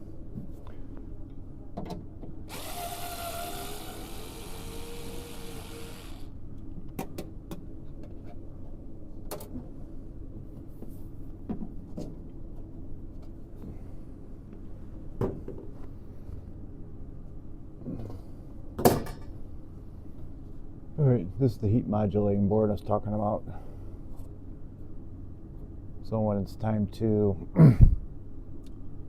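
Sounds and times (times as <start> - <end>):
steady low hum: 0.0 - 29.0
power drill whirring: 2.5 - 6.3.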